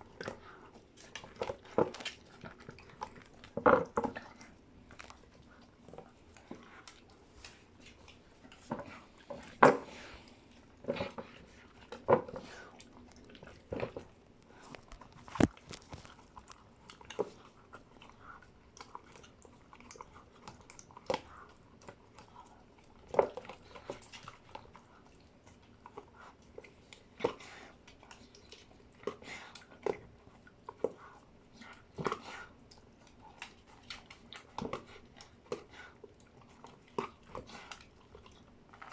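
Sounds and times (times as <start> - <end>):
dog chewing and crunching food: 0.0 - 38.9.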